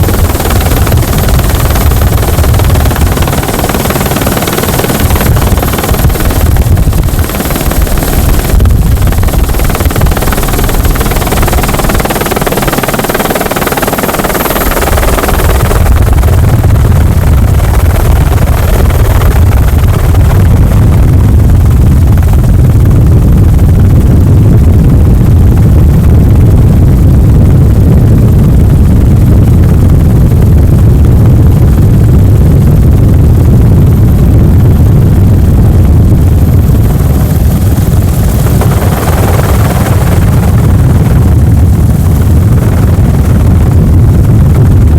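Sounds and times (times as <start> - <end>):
helicopter rotor thudding: 0.0 - 23.5, 36.1 - 44.9.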